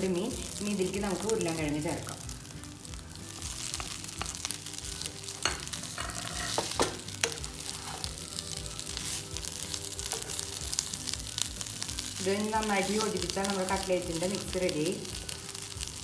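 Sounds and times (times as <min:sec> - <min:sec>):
food sizzling in oil in a frying pan: 0:00.0 - 0:16.0
spoon stirring and scraping a pan: 0:03.2 - 0:14.5.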